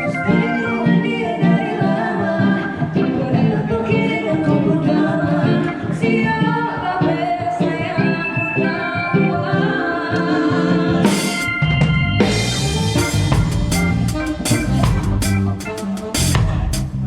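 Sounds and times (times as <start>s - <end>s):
live band playing: 0.0s - 4.0s, 7.1s - 17.0s
woman singing: 0.0s - 11.6s
kick drum and bass: 12.3s - 17.0s.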